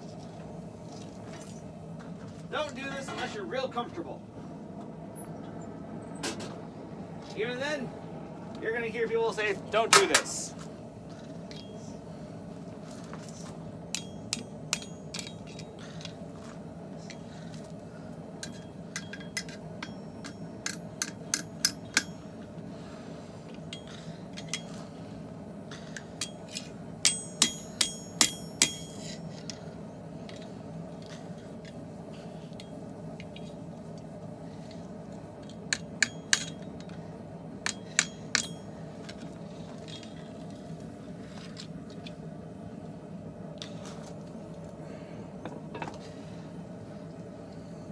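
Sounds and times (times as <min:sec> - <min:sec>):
steady low hum: 0:00.0 - 0:47.9
hammer striking hot steel: 0:09.9 - 0:10.5, 0:13.8 - 0:16.2, 0:18.4 - 0:22.7, 0:23.5 - 0:29.8, 0:35.5 - 0:37.0, 0:37.6 - 0:38.8.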